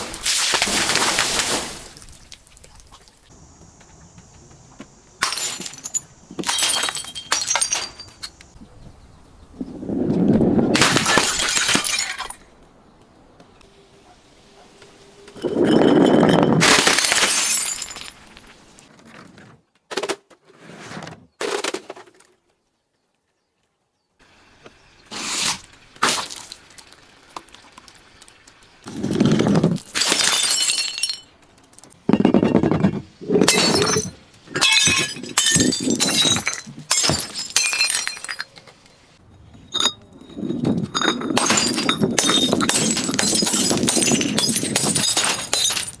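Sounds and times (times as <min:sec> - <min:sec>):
glass shards tinkling: 0:05.2 - 0:08.4, 0:15.4 - 0:18.6, 0:30.0 - 0:31.3, 0:33.5 - 0:38.6, 0:39.6 - 0:46.0
glass smashing and crunching: 0:05.2 - 0:08.4, 0:10.8 - 0:12.5, 0:15.4 - 0:18.6, 0:29.0 - 0:32.3, 0:33.4 - 0:38.8, 0:40.8 - 0:46.0.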